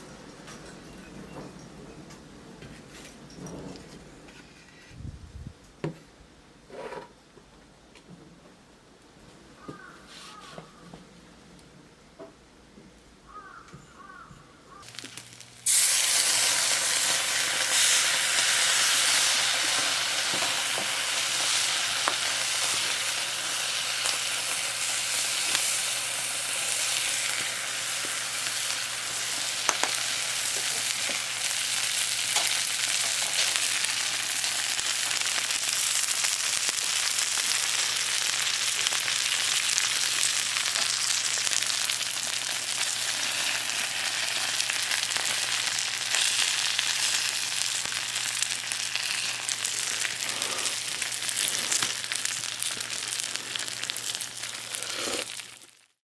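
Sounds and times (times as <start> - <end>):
sizzling hiss with crackles: 14.8 - 56.0.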